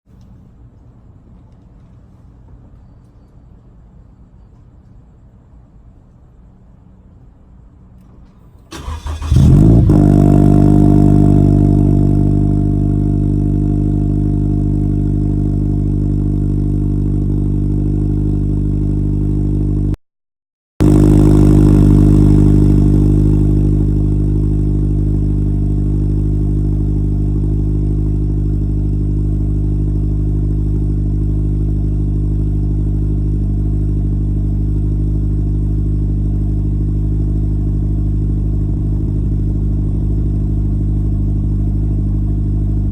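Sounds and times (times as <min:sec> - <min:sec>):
car engine idling: 0:08.4 - 0:20.0, 0:20.8 - 0:42.9.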